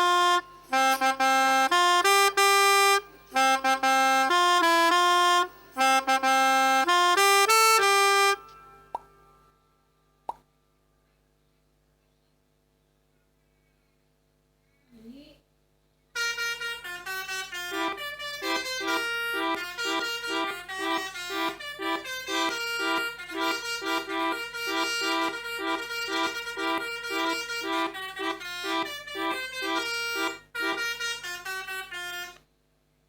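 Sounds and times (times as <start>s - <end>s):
melodica playing lively tune: 0.0s - 9.0s, 16.2s - 32.4s.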